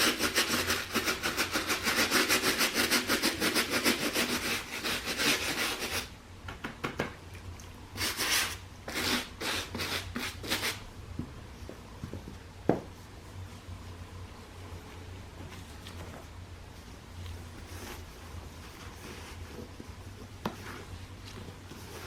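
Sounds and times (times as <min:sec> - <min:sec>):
rubbing strokes on a sneaker: 0:00.0 - 0:06.1, 0:08.0 - 0:10.9, 0:16.7 - 0:22.0.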